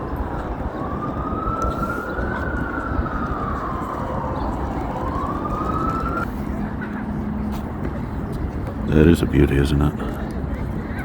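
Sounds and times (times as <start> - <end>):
emergency vehicle siren wailing: 0.0 - 6.6
low background noise: 0.0 - 11.0.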